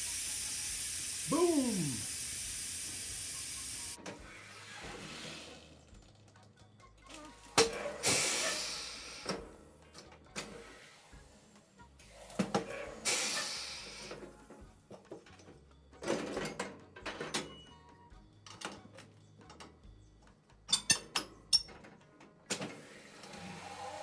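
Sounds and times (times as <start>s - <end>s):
air hissing: 0.0s - 4.0s.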